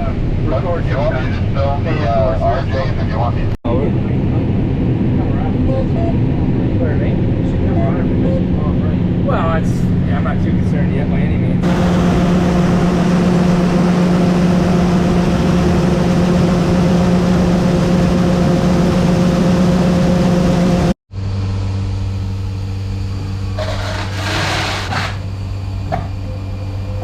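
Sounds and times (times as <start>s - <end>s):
low machine hum: 2.3s - 27.0s
farm machine engine drone: 11.6s - 27.0s.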